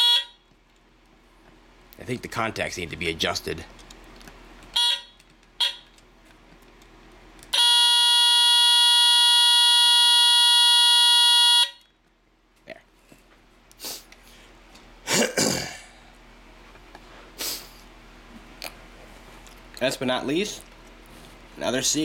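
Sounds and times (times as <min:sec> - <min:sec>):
shrill smoke alarm tone: 0:00.0 - 0:00.4, 0:04.8 - 0:05.9, 0:07.6 - 0:11.8
smoke alarm blips: 0:04.8 - 0:05.9, 0:07.6 - 0:11.9.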